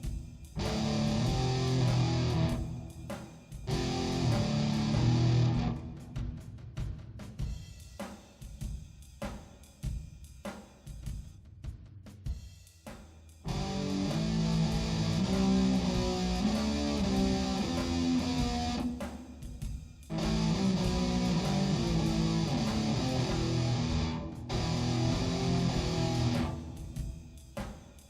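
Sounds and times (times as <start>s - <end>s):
guitar music: 0.6s - 2.8s, 3.7s - 5.8s, 13.5s - 18.9s, 20.1s - 26.7s.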